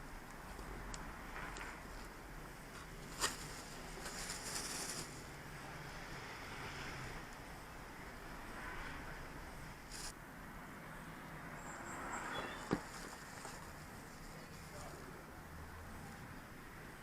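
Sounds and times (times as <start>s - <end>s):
scratchy rustle: 3.0s - 5.2s, 9.9s - 10.1s.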